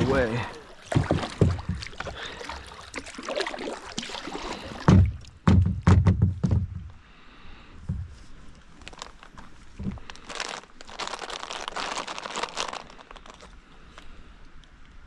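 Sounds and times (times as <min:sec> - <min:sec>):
rustling movement in water: 0:00.0 - 0:05.4, 0:07.9 - 0:14.8
hollow knocks on kayak hull: 0:00.8 - 0:02.2, 0:04.7 - 0:07.0.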